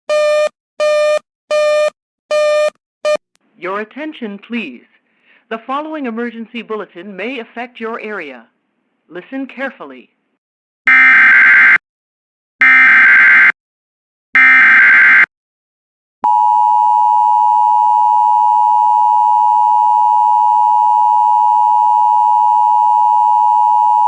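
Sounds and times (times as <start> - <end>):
two-tone alert signal: 0.1 - 3.2.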